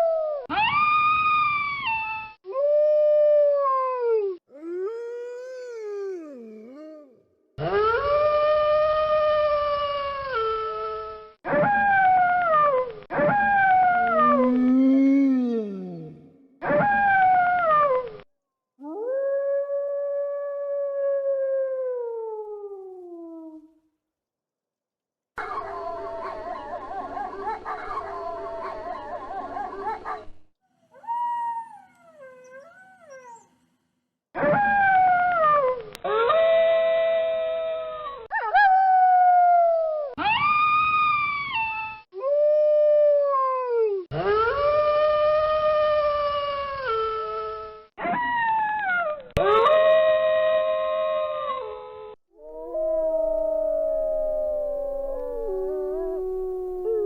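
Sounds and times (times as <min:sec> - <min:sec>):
wolves howling: 0:13.2 - 0:15.3, 0:52.4 - 0:57.0.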